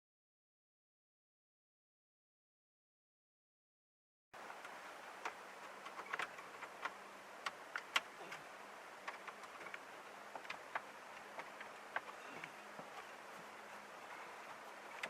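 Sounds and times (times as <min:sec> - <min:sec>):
faint steady hum: 0:04.4 - 0:15.0
light clicks and ticks: 0:04.5 - 0:13.6.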